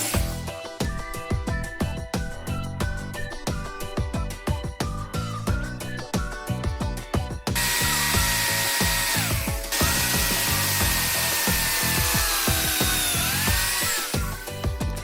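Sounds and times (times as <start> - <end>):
music with steady beat: 0.0 - 15.0
power tool motor whine: 7.6 - 14.5.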